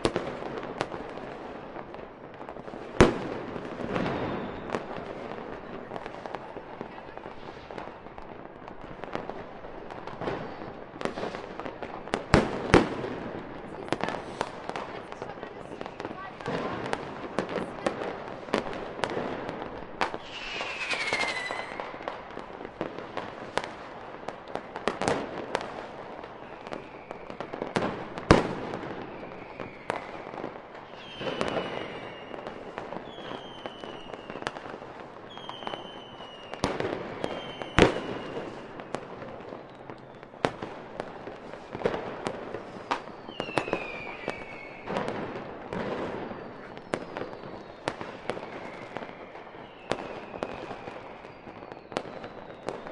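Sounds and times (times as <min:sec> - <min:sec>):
fireworks bangs and crackling bursts: 0:00.0 - 0:52.9
whistles falling in pitch: 0:20.2 - 0:22.0.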